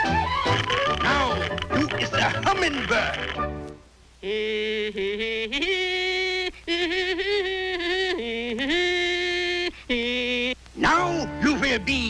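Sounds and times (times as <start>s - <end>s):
cartoon character humming: 4.2s - 11.5s.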